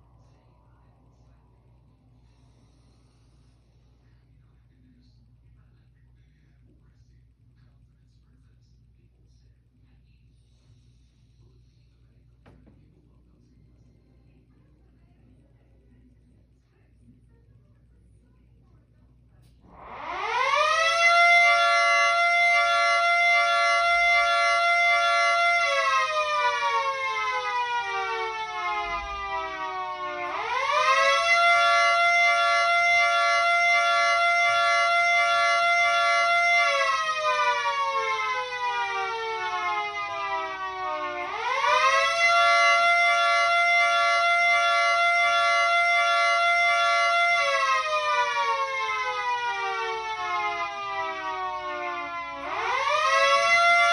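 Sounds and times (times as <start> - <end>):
two-tone siren rising and falling: 19.8 - 53.9.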